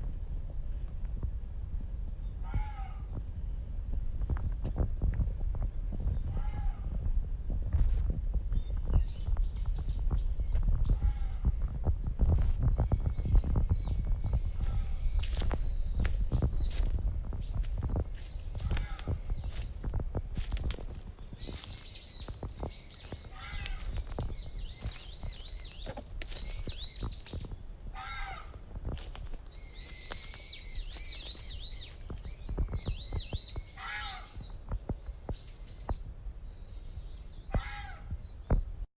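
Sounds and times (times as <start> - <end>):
songbirds chirping: 0.0 - 38.9.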